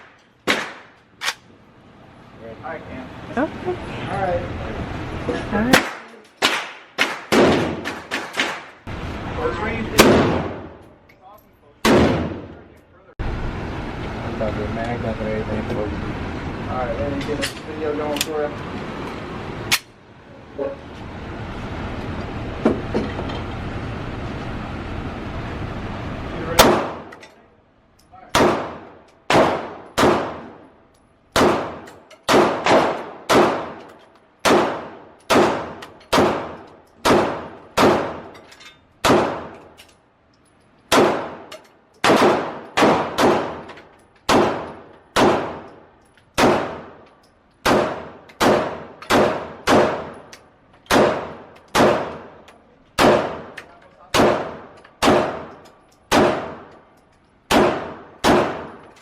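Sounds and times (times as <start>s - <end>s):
gunshots echoing: 0.0s - 1.0s, 5.7s - 8.8s, 9.9s - 10.8s, 11.8s - 12.6s, 26.5s - 27.2s, 28.3s - 30.7s, 31.3s - 38.3s, 39.0s - 39.6s, 40.9s - 43.7s, 44.3s - 45.8s, 46.4s - 47.0s, 47.6s - 50.3s, 50.9s - 52.4s, 53.0s - 56.8s, 57.5s - 58.9s.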